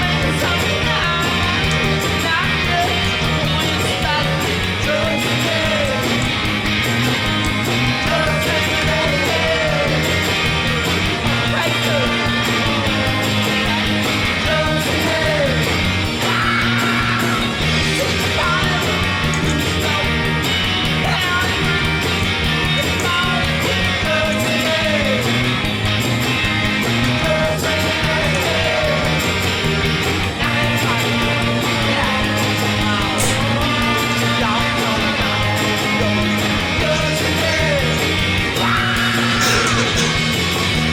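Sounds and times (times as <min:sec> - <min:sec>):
loud rock music with singing: 0:00.0 - 0:40.9.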